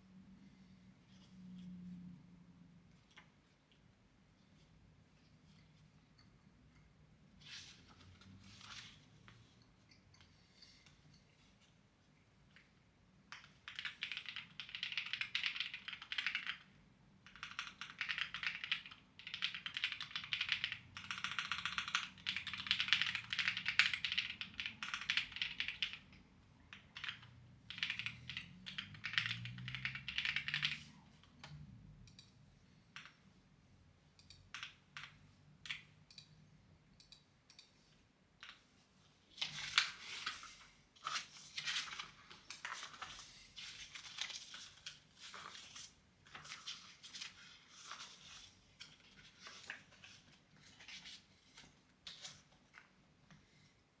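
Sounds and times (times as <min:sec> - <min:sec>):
typing on clacky keyboard: 0:13.3 - 0:30.9.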